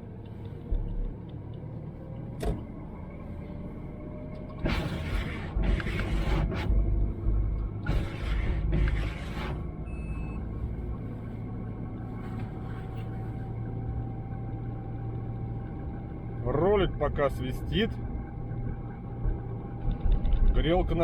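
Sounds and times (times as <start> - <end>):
engine and road drone: 0.0 - 21.0
heavy rumbling noise: 0.0 - 21.0
faint thin pulley whistle: 9.9 - 10.4.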